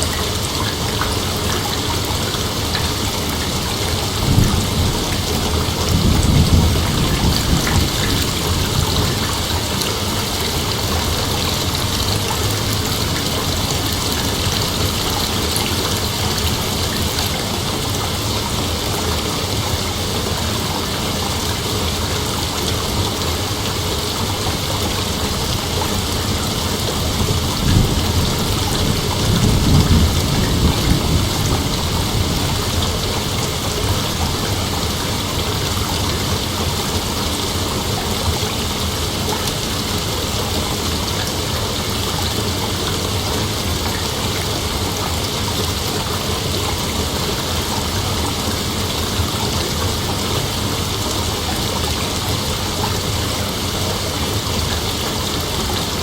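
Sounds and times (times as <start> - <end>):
steady rain: 0.0 - 56.0
thunder rumbling: 0.7 - 18.9, 24.2 - 38.8.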